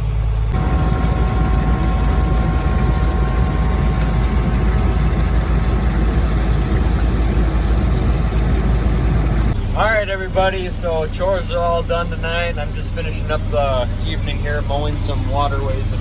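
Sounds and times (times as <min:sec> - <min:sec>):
high whine: 0:00.2 - 0:10.2
tractor engine running: 0:00.5 - 0:09.6.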